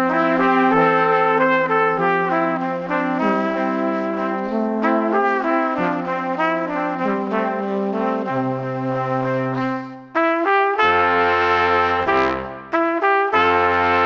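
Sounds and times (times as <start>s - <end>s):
instrumental music with brass melody: 0.0s - 14.0s.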